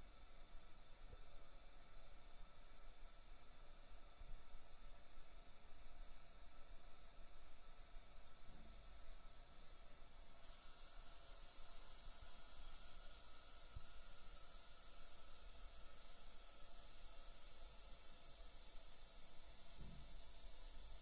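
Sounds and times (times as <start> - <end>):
toilet cistern refilling hiss: 0.0 - 21.0.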